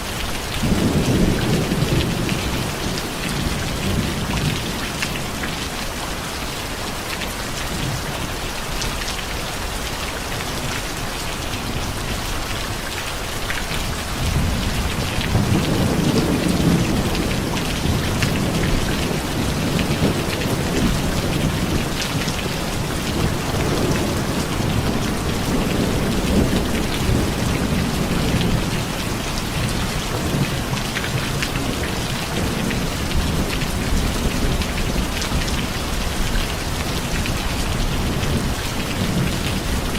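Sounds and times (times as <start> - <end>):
steady rain: 0.0 - 39.9
rolling thunder: 0.4 - 5.6, 13.7 - 39.9.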